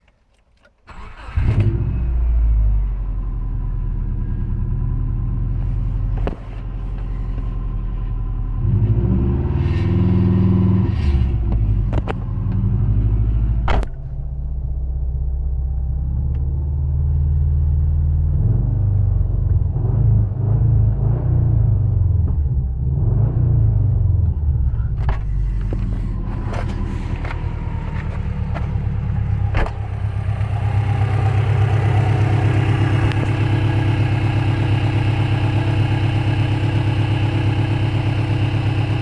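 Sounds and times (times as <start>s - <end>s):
engine running with rod knock: 5.6s - 7.7s, 11.1s - 12.9s, 13.5s - 14.6s, 24.2s - 39.0s.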